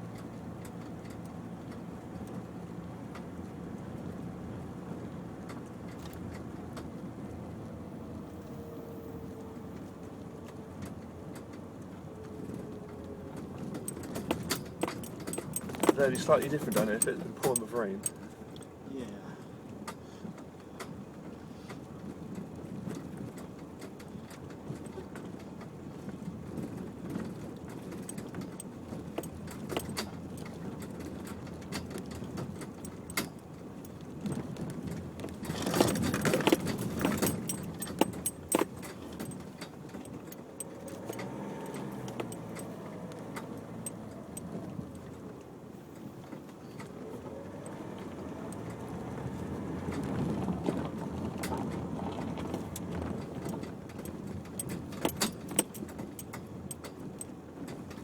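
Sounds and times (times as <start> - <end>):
car engine and tyre noise: 0.0 - 58.0
rattles and clicks: 12.7 - 18.7, 22.9 - 58.0.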